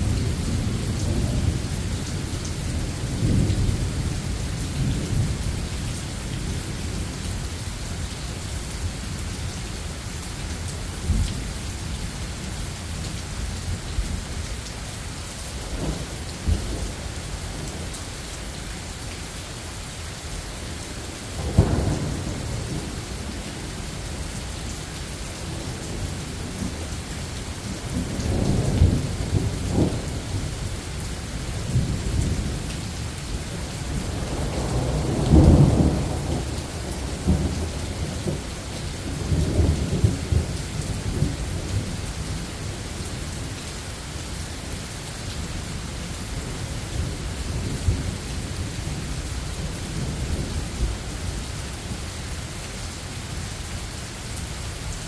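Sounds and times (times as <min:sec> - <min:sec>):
steady rain: 0:00.0 - 0:55.0
thunder rumbling: 0:21.4 - 0:24.3, 0:25.4 - 0:32.7, 0:33.4 - 0:42.4.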